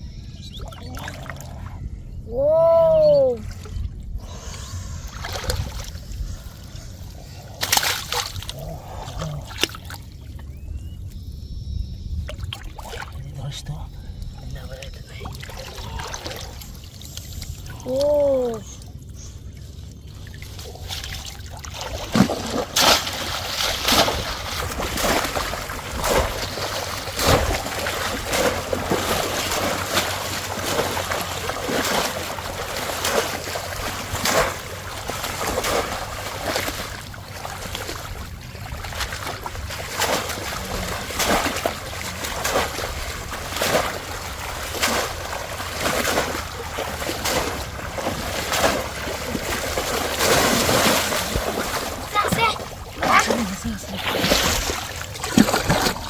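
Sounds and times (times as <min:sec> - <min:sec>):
shallow water splashing: 0:03.0 - 0:11.3, 0:12.2 - 0:56.0
water trickling: 0:12.0 - 0:56.0.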